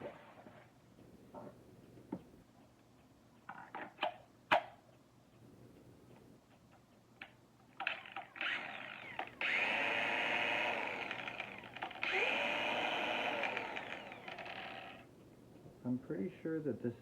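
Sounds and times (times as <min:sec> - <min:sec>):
angle grinder whining: 0:08.0 - 0:15.1.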